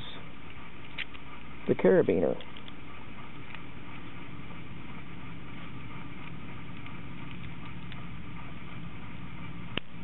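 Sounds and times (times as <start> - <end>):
low hum and hiss: 0.0 - 10.0.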